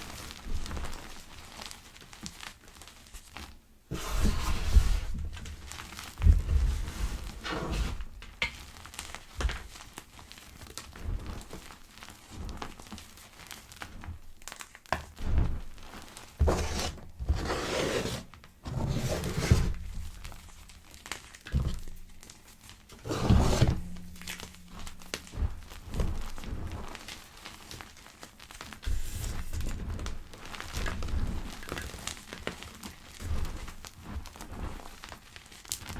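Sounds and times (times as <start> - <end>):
chalk being crushed: 16.4 - 20.7.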